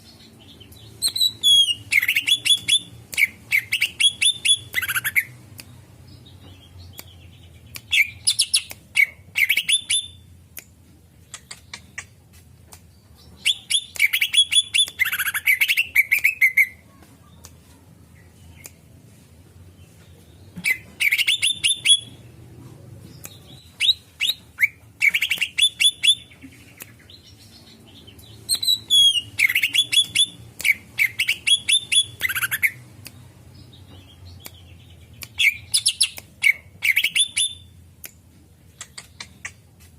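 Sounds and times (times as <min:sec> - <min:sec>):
bird chirping rapidly: 0:00.6 - 0:05.4, 0:20.6 - 0:22.2, 0:27.0 - 0:32.8, 0:33.6 - 0:37.7
sharp clicks: 0:06.4 - 0:16.6, 0:38.0 - 0:39.8.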